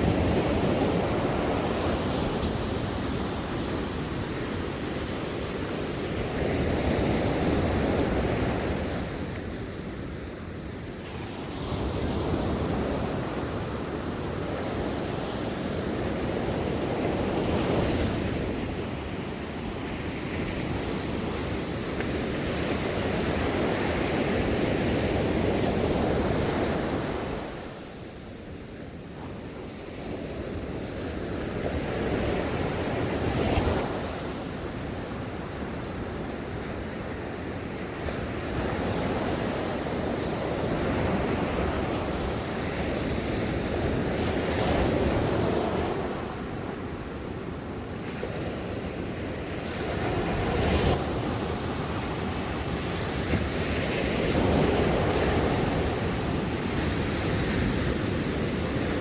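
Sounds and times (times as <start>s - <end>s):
ocean waves breaking on shore: 29.3s - 59.0s.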